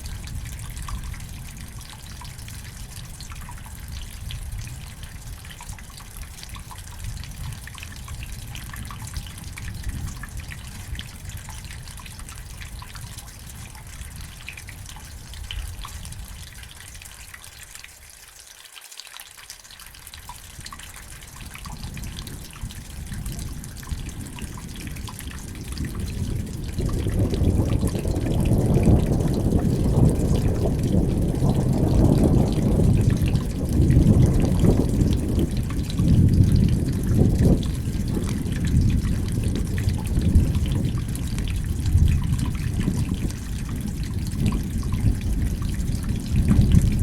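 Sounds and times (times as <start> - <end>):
steady rain: 0.0 - 47.0
water dripping: 0.0 - 47.0
rolling thunder: 21.8 - 47.0.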